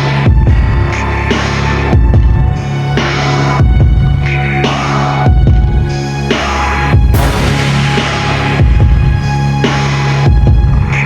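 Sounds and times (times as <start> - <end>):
low drone over throbbing bass: 6.8 - 11.0
deep thump: 7.2 - 9.8.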